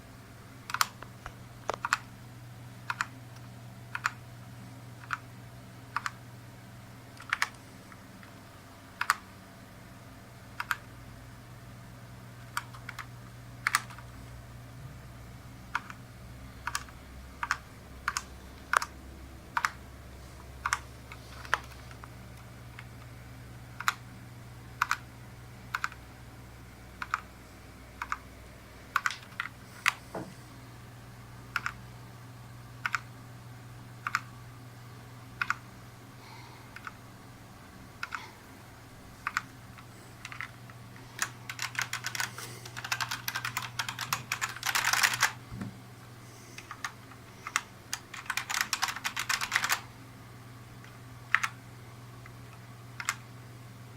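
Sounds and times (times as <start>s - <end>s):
fast typing: 0.7s - 1.0s, 2.9s - 3.1s, 3.9s - 4.2s, 7.2s - 7.6s, 9.0s - 9.2s, 10.6s - 10.9s, 12.4s - 14.0s, 15.7s - 16.0s, 16.6s - 18.9s, 20.6s - 22.1s, 23.8s - 24.0s, 24.8s - 25.0s, 25.7s - 26.0s, 27.0s - 27.3s, 28.9s - 30.0s, 31.5s - 31.8s, 34.0s - 34.3s, 35.4s - 35.6s, 38.0s - 38.2s, 39.2s - 39.5s, 40.2s - 45.4s, 46.6s - 49.9s, 51.3s - 51.6s, 52.6s - 53.2s
keyboard keystrokes clicking: 0.7s - 2.1s, 2.9s - 4.2s, 5.0s - 5.2s, 5.9s - 6.2s, 7.2s - 7.6s, 9.0s - 9.2s, 10.6s - 10.8s, 12.4s - 14.0s, 15.7s - 16.0s, 16.6s - 18.9s, 19.5s - 19.8s, 20.6s - 23.1s, 23.8s - 24.0s, 24.8s - 25.0s, 25.7s - 26.0s, 27.0s - 27.3s, 28.0s - 28.2s, 28.9s - 30.3s, 31.5s - 31.8s, 32.8s - 33.1s, 34.0s - 34.3s, 35.4s - 35.6s, 36.8s - 37.0s, 38.0s - 38.2s, 39.2s - 40.6s, 41.2s - 45.4s, 46.6s - 49.8s, 50.8s - 51.6s, 52.2s - 53.2s.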